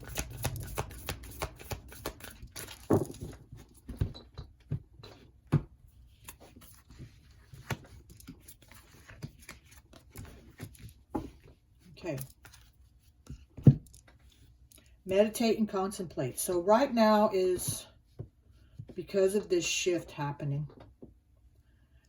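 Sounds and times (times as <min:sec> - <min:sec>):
cards shuffling: 0:00.0 - 0:03.6, 0:06.1 - 0:11.3.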